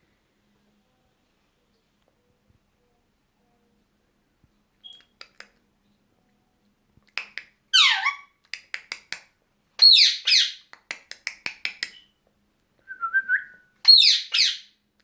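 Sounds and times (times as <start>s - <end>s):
parrots calling harshly: 7.8s - 8.3s, 9.8s - 10.6s, 13.9s - 14.6s.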